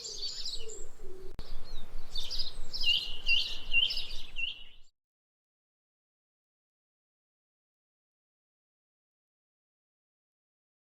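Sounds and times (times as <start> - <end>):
songbird chirping: 0.0 - 4.9.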